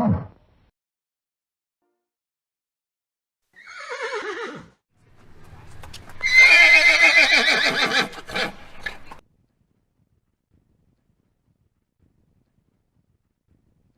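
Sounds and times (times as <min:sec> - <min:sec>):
horse whinnying: 0:03.6 - 0:04.8, 0:06.2 - 0:09.2.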